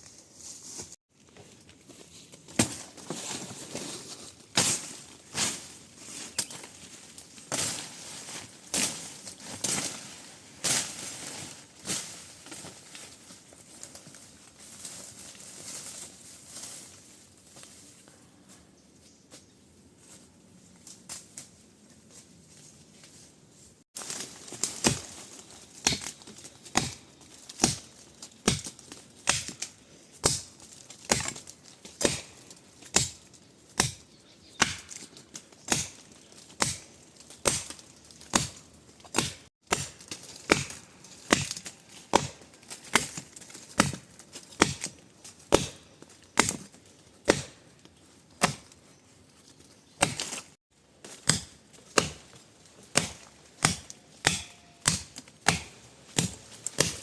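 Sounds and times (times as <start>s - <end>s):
sharp chopping strikes: 25.8s - 27.0s, 27.6s - 29.6s, 30.2s - 31.4s, 32.0s - 33.2s, 33.8s - 34.0s, 34.6s - 35.0s, 35.7s - 36.0s, 36.6s - 43.2s, 43.8s - 46.6s, 47.2s - 47.6s, 48.4s - 48.7s, 50.0s - 50.4s, 51.0s - 57.0s.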